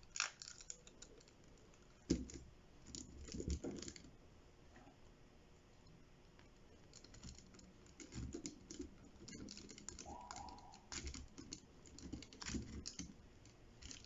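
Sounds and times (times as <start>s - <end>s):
plastic toy clicks: 0.0s - 1.4s, 6.9s - 14.0s.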